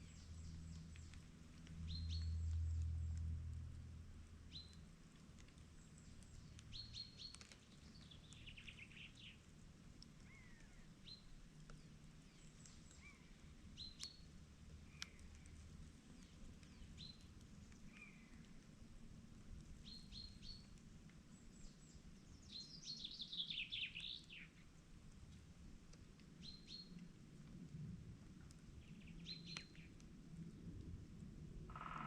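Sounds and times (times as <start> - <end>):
wild birds chirping: 0.0 - 2.8, 4.5 - 18.7, 19.7 - 24.7, 28.7 - 30.0, 31.7 - 32.0
faint low hum: 0.0 - 32.0.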